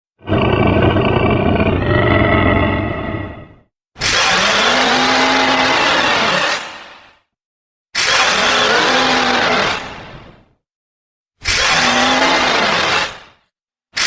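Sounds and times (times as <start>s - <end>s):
monster roars: 0.2s - 3.6s, 11.6s - 13.1s.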